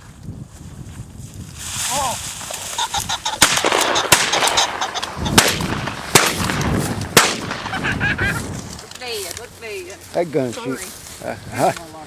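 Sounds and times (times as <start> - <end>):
shotgun shots: 3.4 - 7.8.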